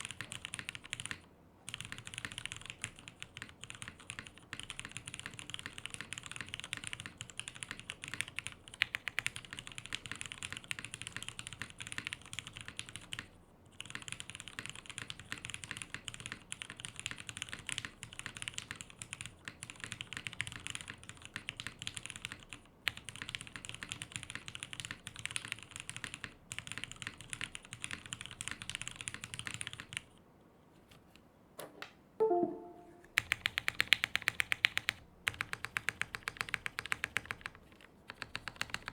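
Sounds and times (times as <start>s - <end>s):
fast typing on keyboard: 0.0s - 30.2s, 33.2s - 38.9s
brief pitched sound: 32.2s - 33.2s.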